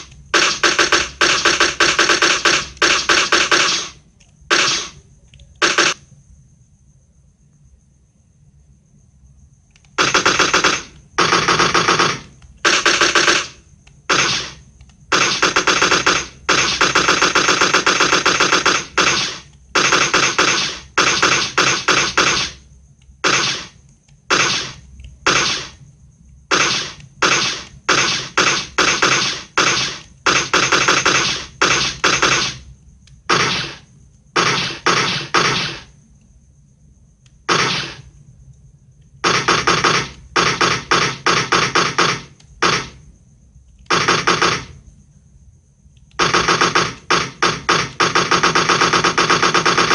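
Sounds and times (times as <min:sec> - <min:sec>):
automatic gunfire bursts: 0:00.0 - 0:05.0, 0:05.6 - 0:06.0, 0:10.0 - 0:22.6, 0:23.2 - 0:25.8, 0:26.5 - 0:32.6, 0:33.3 - 0:35.9, 0:37.5 - 0:38.0, 0:39.2 - 0:43.0, 0:43.9 - 0:44.8, 0:46.2 - 0:49.9.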